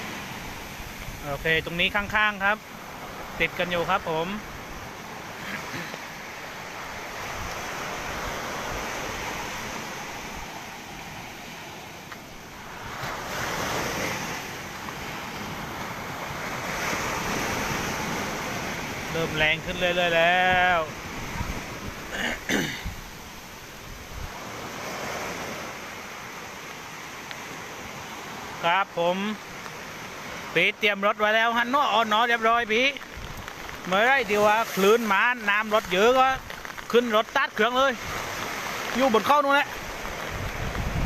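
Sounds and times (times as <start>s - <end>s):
storm surf washing up beach: 0.0s - 41.0s
wind buffeting microphone: 20.4s - 22.1s, 39.8s - 41.0s.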